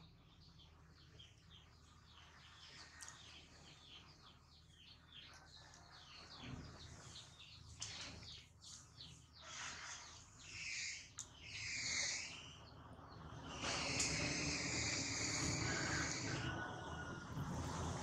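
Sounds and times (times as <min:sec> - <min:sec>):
small bird chirping: 0:00.0 - 0:17.8.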